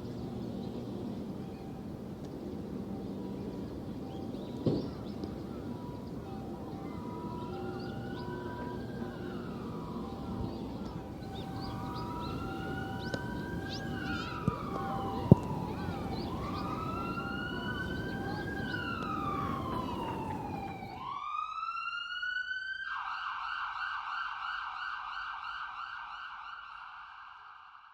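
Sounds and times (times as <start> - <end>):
background noise: 0.0 - 27.9
siren wailing: 5.2 - 26.8
siren fast warbling yelp: 6.5 - 21.0.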